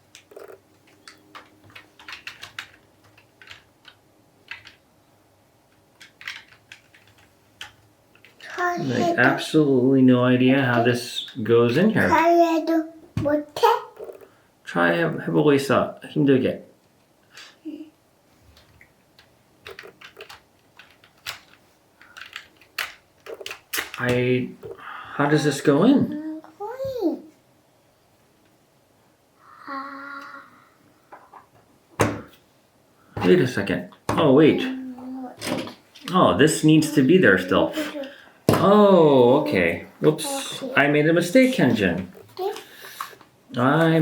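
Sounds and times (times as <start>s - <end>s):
plastic bricks clicking together: 19.2s - 24.0s.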